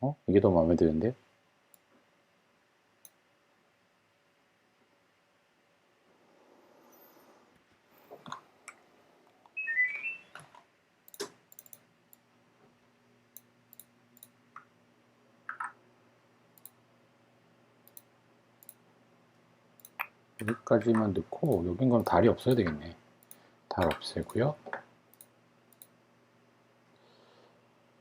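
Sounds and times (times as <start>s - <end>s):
computer mouse clicking: 11.1s - 12.2s, 13.4s - 14.7s, 16.6s - 16.8s, 17.8s - 18.8s, 19.8s - 24.4s, 25.1s - 26.0s.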